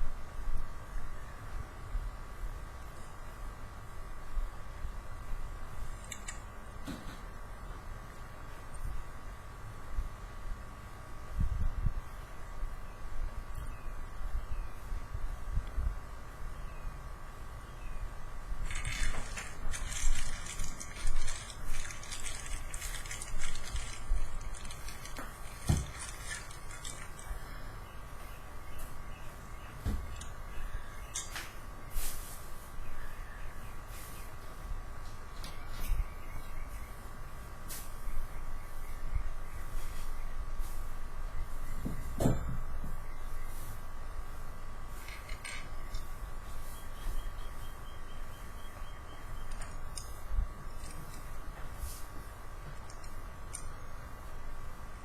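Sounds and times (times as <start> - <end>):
steady electrical hum: 0.0 - 55.0
packaging rustling: 18.6 - 27.4
plastic toy clicking and rattling: 18.6 - 27.4, 45.1 - 46.1, 49.5 - 50.1, 52.8 - 53.7
small hard objects clinking: 18.6 - 27.4.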